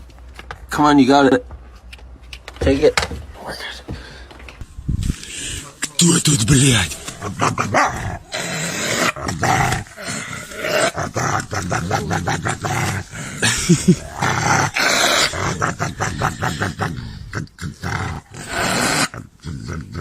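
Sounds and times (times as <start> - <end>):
sharp clicks and knocks: 1.8 - 4.6
pet animal growling: 6.6 - 20.0.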